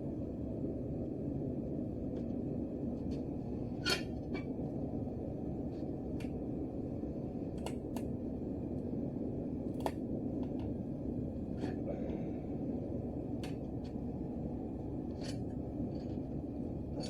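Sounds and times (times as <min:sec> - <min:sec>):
low rumbling noise: 0:00.0 - 0:17.0.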